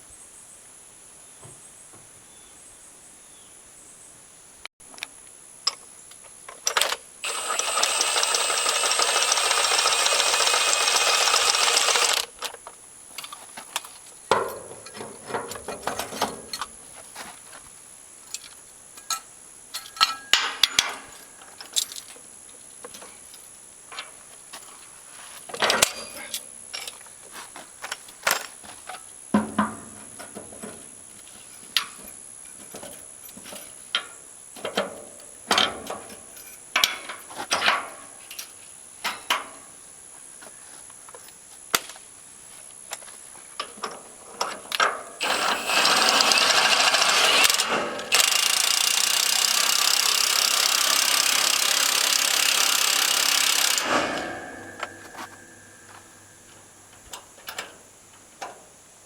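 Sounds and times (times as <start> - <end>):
tools clicking and knocking: 6.5 - 12.6, 47.1 - 56.1
impact wrench hammering: 7.2 - 12.3, 45.2 - 56.1.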